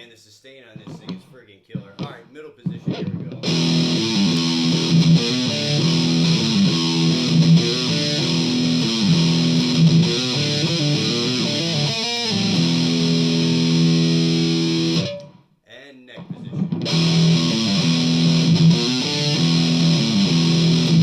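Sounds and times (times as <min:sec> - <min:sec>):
distorted electric guitar riffing: 0:01.9 - 0:15.4, 0:16.1 - 0:21.0.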